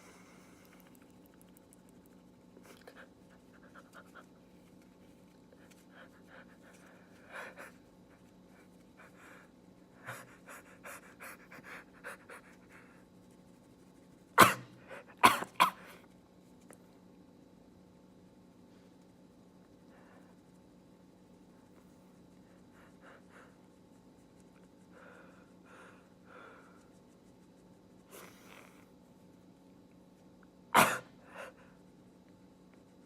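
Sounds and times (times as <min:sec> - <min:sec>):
man sneezing: 0:14.4 - 0:15.8, 0:30.8 - 0:31.2.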